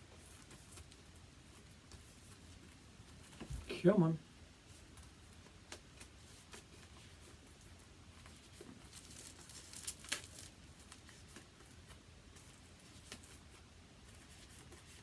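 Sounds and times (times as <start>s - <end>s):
plastic wrap crinkling and tearing: 8.3s - 11.5s.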